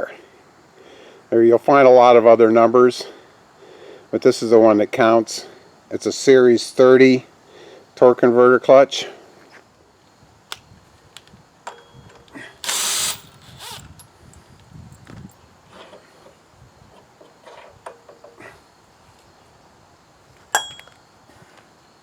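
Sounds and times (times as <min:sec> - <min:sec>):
tools clicking and knocking: 0:11.6 - 0:14.0, 0:17.0 - 0:18.4.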